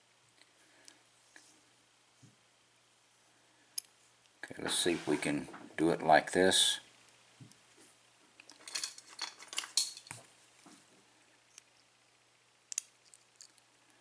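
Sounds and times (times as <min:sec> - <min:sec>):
small metallic clicks: 0:12.7 - 0:13.7.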